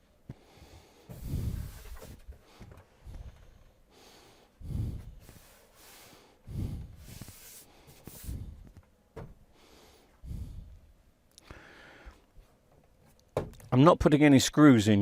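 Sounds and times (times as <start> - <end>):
person breathing heavily through nose: 0.3 - 8.7, 9.5 - 12.3.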